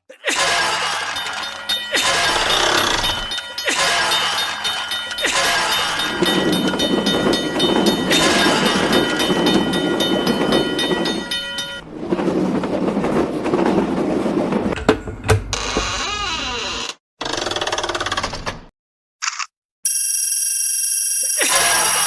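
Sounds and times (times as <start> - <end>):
train wheels rumbling and clattering: 0.4 - 16.2
high ringing tones: 0.8 - 13.2.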